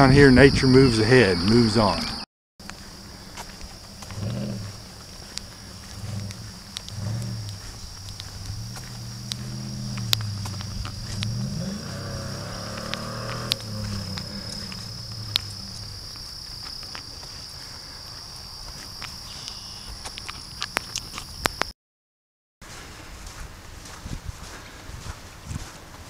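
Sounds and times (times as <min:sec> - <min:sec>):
insects chirring: 0:00.0 - 0:21.7
vehicle engine hum: 0:00.3 - 0:17.8
sharp ticks: 0:05.3 - 0:16.3.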